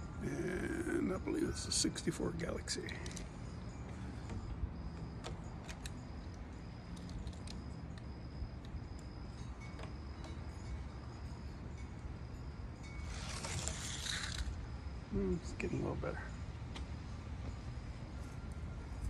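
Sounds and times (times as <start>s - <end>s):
loud hissing rattle: 12.8s - 14.8s
toy cars on plastic track: 13.0s - 14.6s.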